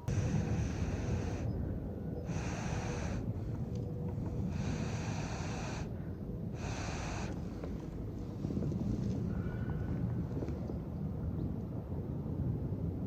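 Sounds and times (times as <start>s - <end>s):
person blowing hard: 0.0s - 1.5s, 2.3s - 3.7s, 4.4s - 5.9s, 6.6s - 7.4s
low steady rumble: 0.0s - 13.0s.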